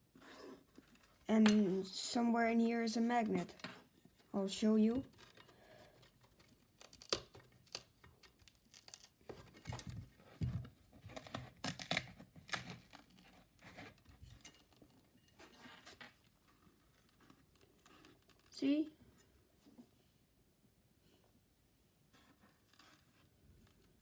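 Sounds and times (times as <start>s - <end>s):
crackles: 3.5s - 9.6s
paper cone tearing and crinkling: 6.2s - 9.4s, 11.1s - 13.4s.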